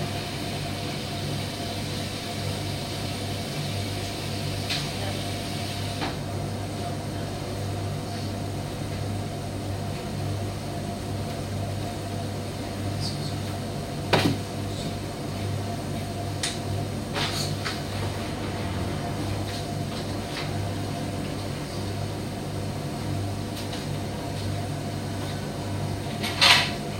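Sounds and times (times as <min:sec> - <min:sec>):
tumble dryer hum: 0:13.8 - 0:26.9.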